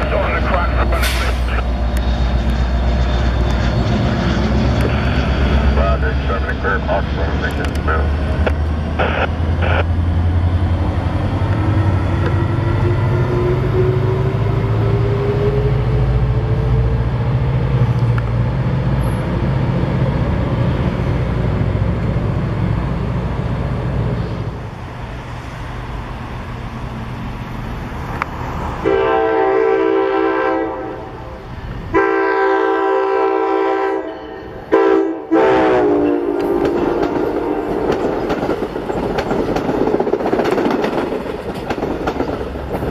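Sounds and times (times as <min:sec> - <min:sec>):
steady low rumble: 0:00.0 - 0:14.8
train air horn blasts: 0:28.8 - 0:38.0.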